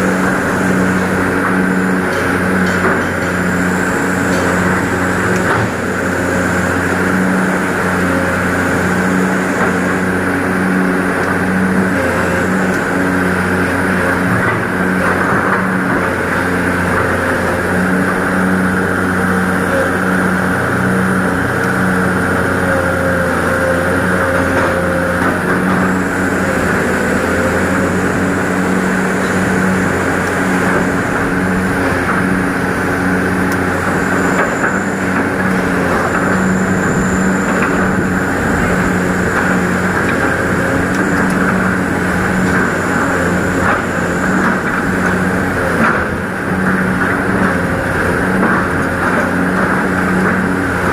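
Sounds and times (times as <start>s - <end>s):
excavator diesel engine running: 0.0s - 50.9s
faint wavering whine: 33.7s - 44.7s.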